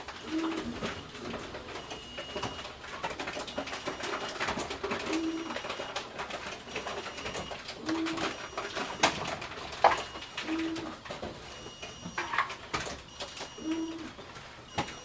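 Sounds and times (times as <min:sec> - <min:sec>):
high electronic tones: 0:09.9 - 0:10.9, 0:11.6 - 0:12.5, 0:13.1 - 0:14.1.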